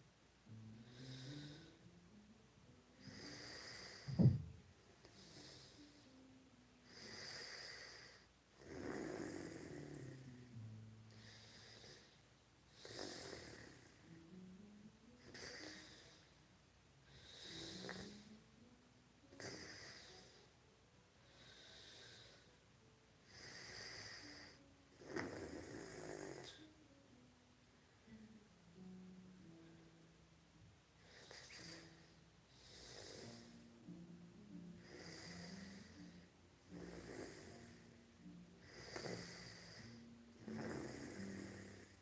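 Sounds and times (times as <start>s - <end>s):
woman snoring: 6.9s - 10.5s, 12.7s - 14.1s, 15.2s - 16.3s, 17.1s - 18.4s, 19.4s - 20.4s, 23.3s - 26.6s, 34.8s - 38.0s, 38.6s - 42.0s.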